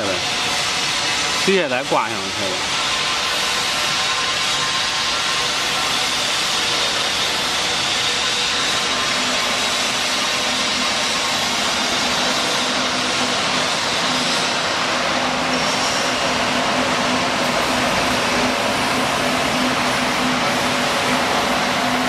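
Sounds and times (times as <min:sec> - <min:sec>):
machine motor hum: 0:05.3 - 0:22.0.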